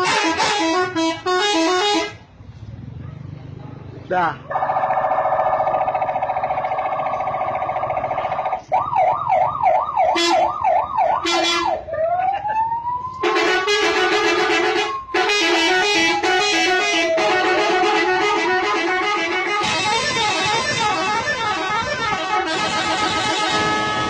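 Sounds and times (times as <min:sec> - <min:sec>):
multi-tone bus horn: 0:00.0 - 0:02.3, 0:10.1 - 0:11.9, 0:13.2 - 0:24.0.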